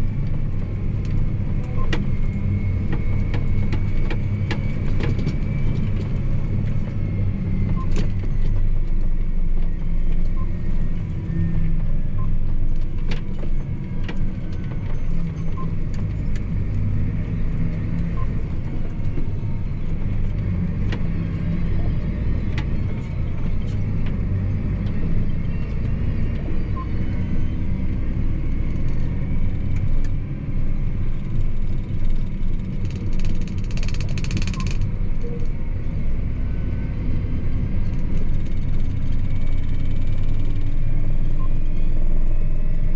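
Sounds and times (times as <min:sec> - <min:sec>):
tractor diesel engine rumble: 0:00.0 - 0:42.9
cab rattles and clicks: 0:00.2 - 0:10.4, 0:30.8 - 0:35.6, 0:37.6 - 0:41.6.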